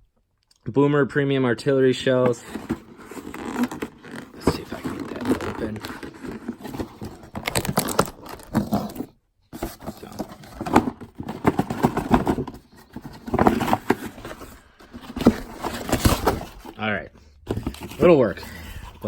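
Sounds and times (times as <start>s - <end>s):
packaging crackling and rustling: 2.4s - 16.8s.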